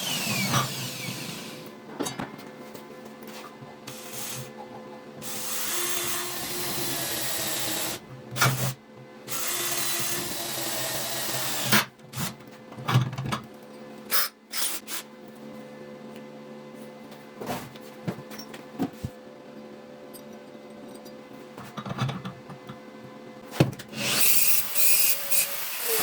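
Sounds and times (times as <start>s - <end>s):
power drill running: 0.0s - 1.7s, 5.2s - 8.0s, 9.3s - 11.7s, 24.0s - 26.0s.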